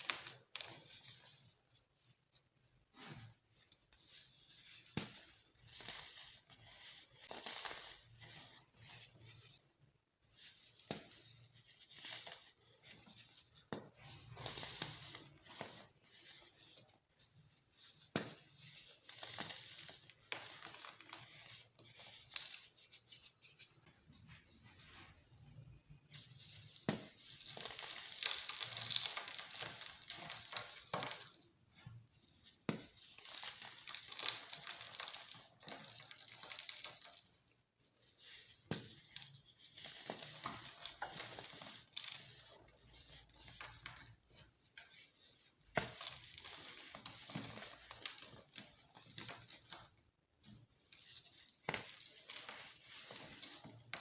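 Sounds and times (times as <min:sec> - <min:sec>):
baking soda crunching: 0:26.4 - 0:31.5.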